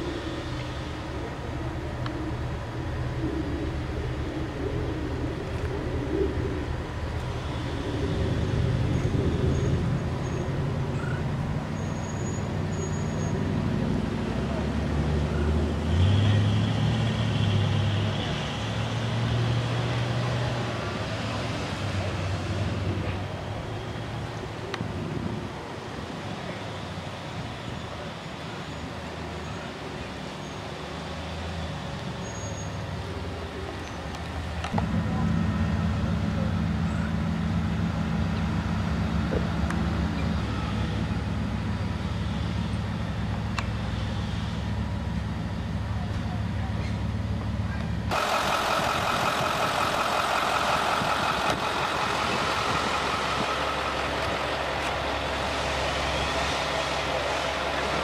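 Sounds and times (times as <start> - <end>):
road noise: 0.0 - 58.0
car engine hum: 32.9 - 58.0.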